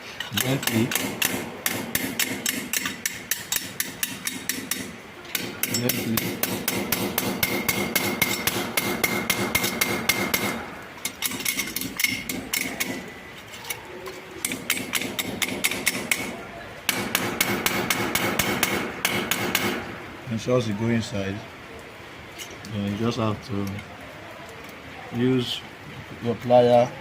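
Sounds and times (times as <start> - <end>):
hammer tapping: 0.4 - 13.1, 14.4 - 19.8.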